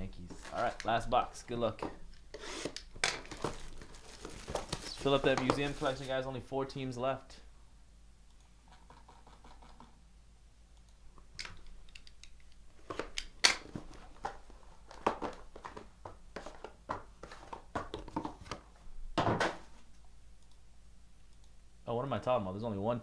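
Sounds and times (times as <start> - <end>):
plastic wrapping crinkling and tearing: 3.1 - 6.3.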